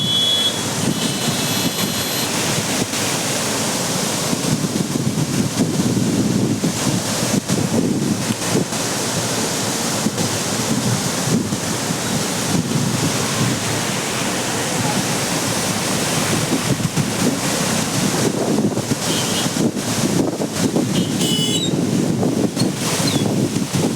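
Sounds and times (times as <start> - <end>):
floodwater rushing: 0.0 - 23.9
wind buffeting microphone: 4.2 - 8.8, 10.0 - 23.9.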